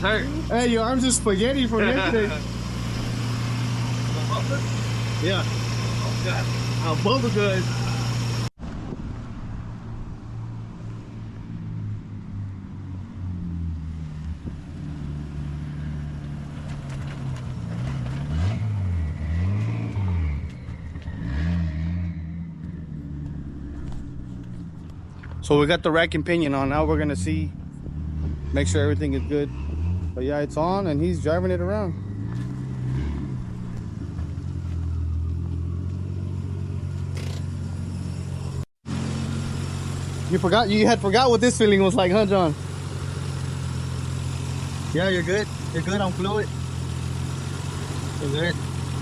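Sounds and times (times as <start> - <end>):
car engine revving: 0.0 - 8.5, 11.0 - 49.0
high whine: 0.0 - 8.5.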